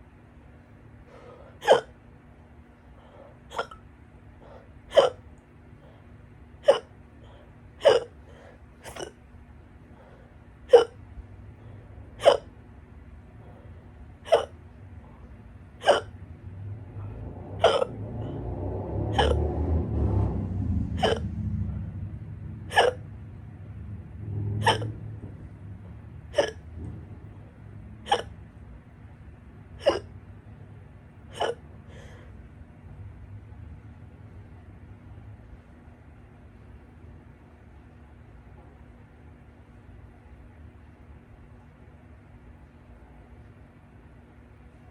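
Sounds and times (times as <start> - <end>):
low rumbling noise: 0.0 - 44.9
person hiccuping: 1.6 - 2.0, 3.5 - 3.8, 4.9 - 5.2, 6.6 - 6.9, 7.8 - 8.2, 8.8 - 9.2, 10.7 - 11.0, 12.2 - 12.6, 14.2 - 14.6, 15.8 - 16.2, 17.6 - 18.0, 19.1 - 19.4, 21.0 - 21.3, 22.7 - 23.0, 24.6 - 25.0, 26.3 - 26.7, 28.0 - 28.4, 29.8 - 30.1, 31.3 - 31.7.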